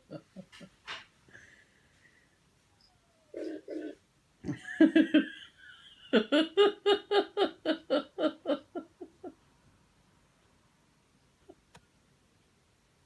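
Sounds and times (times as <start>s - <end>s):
person laughing: 0.0s - 0.9s, 4.4s - 9.4s.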